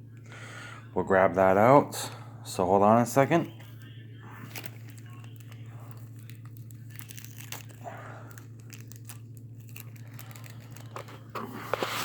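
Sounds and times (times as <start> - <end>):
low steady hum: 0.0 - 12.0
plastic bag crinkling: 3.6 - 12.0.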